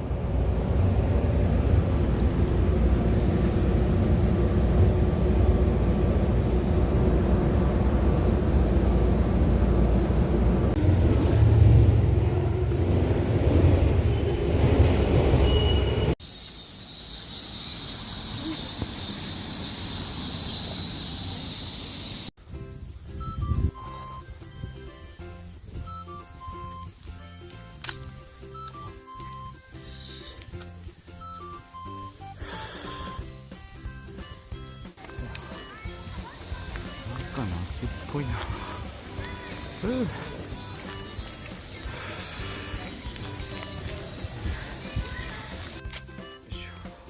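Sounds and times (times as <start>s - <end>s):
low rumble: 0.0s - 16.1s
high pulsing buzz: 16.5s - 45.8s
music: 22.4s - 47.0s.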